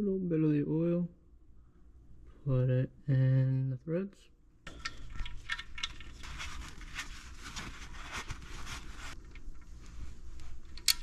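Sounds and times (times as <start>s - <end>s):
rubbing and scraping: 4.7s - 10.7s.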